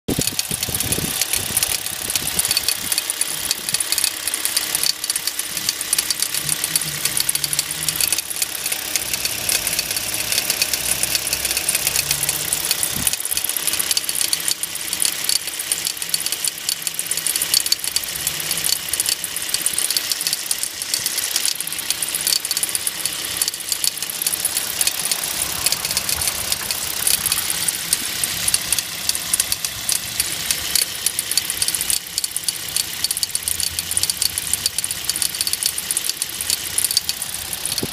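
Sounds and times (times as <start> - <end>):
engine running with knocking: 0.1 - 37.9.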